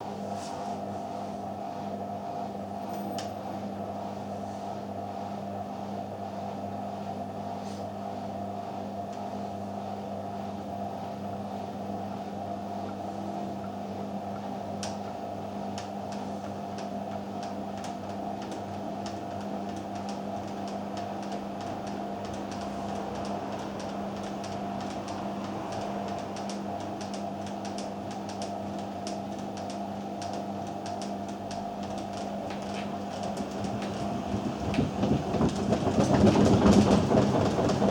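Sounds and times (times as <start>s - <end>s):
washing machine motor hum: 0.0s - 37.9s
rapid knocks of unbalanced drum: 31.8s - 37.9s.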